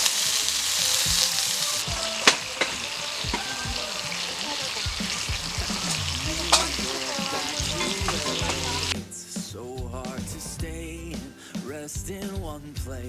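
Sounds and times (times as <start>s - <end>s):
food sizzling in a pan: 0.0s - 9.8s.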